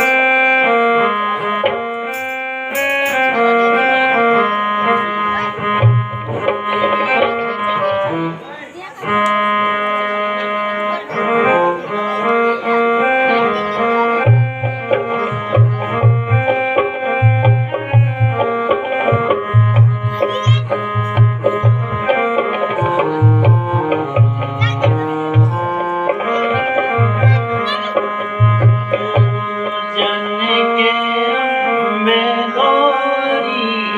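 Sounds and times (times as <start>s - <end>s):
melody of held notes: 0.0s - 33.9s
repeating drum beat: 1.6s - 3.4s, 14.2s - 29.6s.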